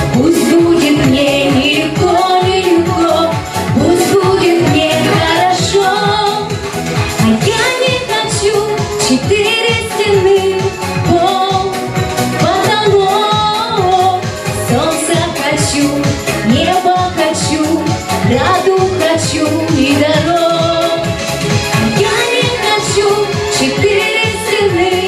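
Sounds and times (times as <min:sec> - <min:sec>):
person singing: 0:00.0 - 0:21.2
pop backing music with beat: 0:00.0 - 0:25.0.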